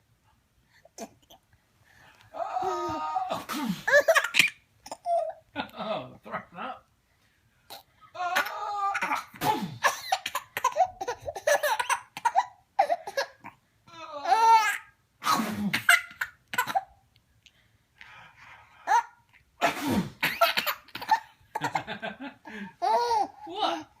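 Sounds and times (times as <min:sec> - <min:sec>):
man sneezing loudly: 0:02.6 - 0:04.0, 0:08.2 - 0:10.1, 0:15.2 - 0:16.0, 0:19.6 - 0:20.6
baby laughing: 0:03.8 - 0:05.4, 0:08.4 - 0:13.4, 0:22.8 - 0:23.9.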